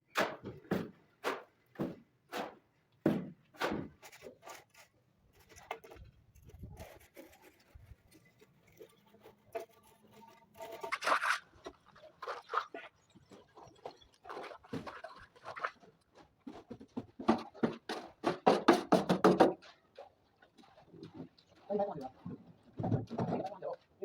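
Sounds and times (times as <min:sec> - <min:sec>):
tool scraping concrete: 0:03.6 - 0:19.6
knocks: 0:17.2 - 0:19.6.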